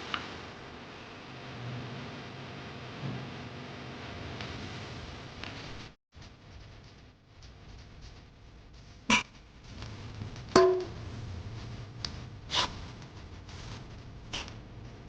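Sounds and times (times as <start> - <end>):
low steady hum: 6.2 - 15.0.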